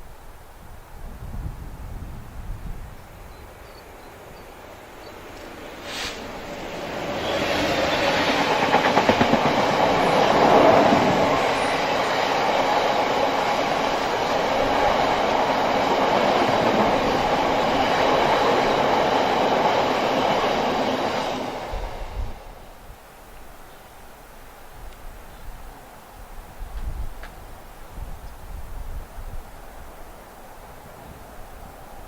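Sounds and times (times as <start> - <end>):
train wheels clattering over rail joints: 5.3 - 21.2.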